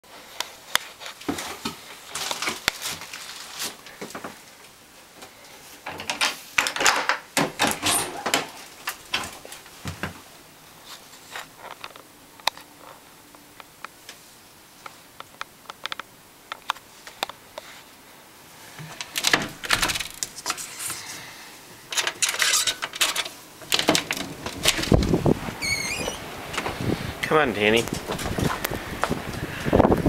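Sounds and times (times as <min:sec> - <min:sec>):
rustling clicks and knocks: 0:00.4 - 0:04.4, 0:18.8 - 0:21.0, 0:21.9 - 0:25.6, 0:27.8 - 0:29.2.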